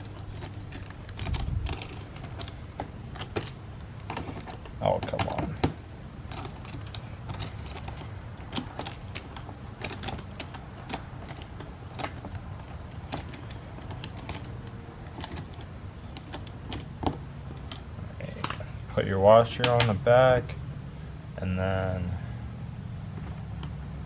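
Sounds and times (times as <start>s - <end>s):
metallic tool clicks and clinks: 0.0s - 2.6s, 3.2s - 3.6s, 6.3s - 16.9s
low steady hum: 0.0s - 24.0s.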